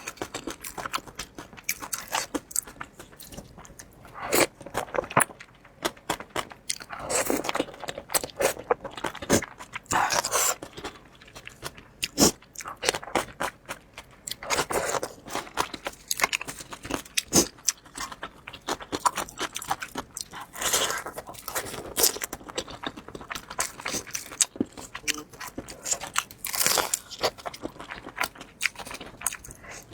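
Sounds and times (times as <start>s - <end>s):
crunchy bites and chewing: 0.0s - 29.9s
wet chewing or slurping: 0.1s - 5.4s.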